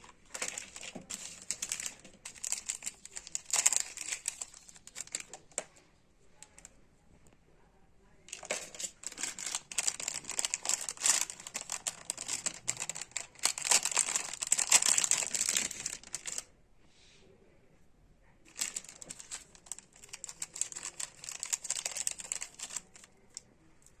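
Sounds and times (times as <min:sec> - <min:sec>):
packaging crinkling and rustling: 0:00.0 - 0:05.7, 0:08.3 - 0:16.5, 0:18.5 - 0:23.5.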